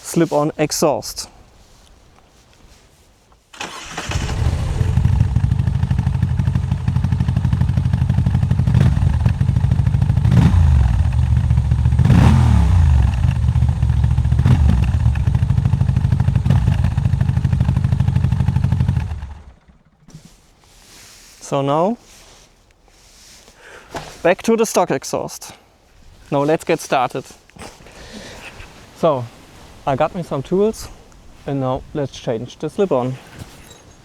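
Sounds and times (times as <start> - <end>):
motorcycle throttle blips: 3.6 - 20.8
motorcycle engine idling: 3.7 - 20.5.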